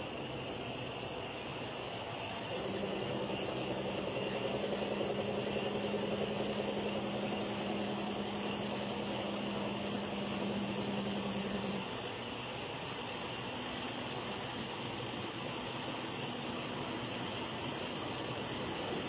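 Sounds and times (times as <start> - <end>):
low droning hum: 0.0 - 12.1.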